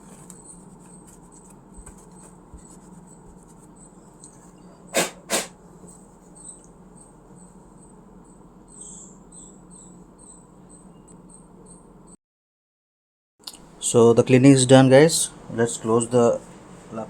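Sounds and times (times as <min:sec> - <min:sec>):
faint high chirping: 0:06.2 - 0:12.2.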